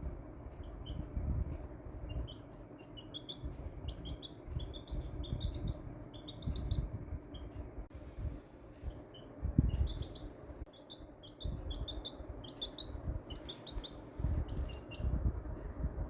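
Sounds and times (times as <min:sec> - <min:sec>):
dull low thumps: 0:00.0 - 0:02.6, 0:03.2 - 0:10.4
chick peeping: 0:00.6 - 0:01.1, 0:02.0 - 0:07.6, 0:08.8 - 0:15.2.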